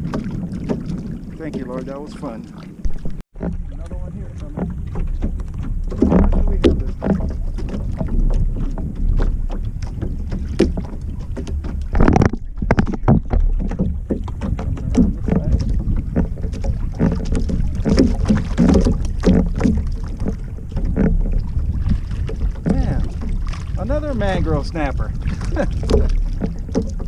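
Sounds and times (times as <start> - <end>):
water sloshing and splashing: 0.0 - 27.0
wind buffeting microphone: 0.0 - 27.0.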